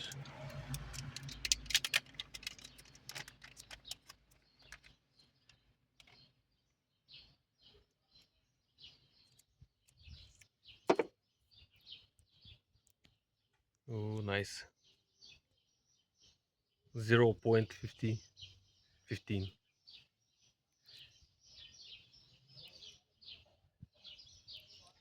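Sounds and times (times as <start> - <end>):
clicks and rustling of packaging: 0.0 - 6.3
faint high bird chirps: 2.4 - 13.2, 13.9 - 25.0.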